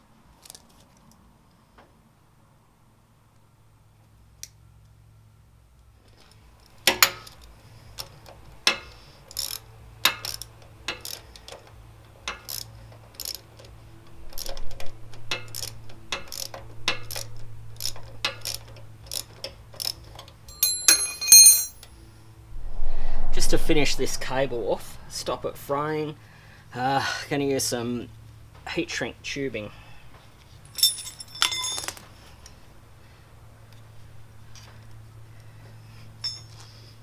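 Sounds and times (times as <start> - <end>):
low steady hum: 0.0 - 37.0
metal tools clicking and tapping: 6.6 - 21.9, 30.6 - 32.6
ringing metallic clinks: 20.5 - 21.9, 30.6 - 32.0, 36.2 - 36.6.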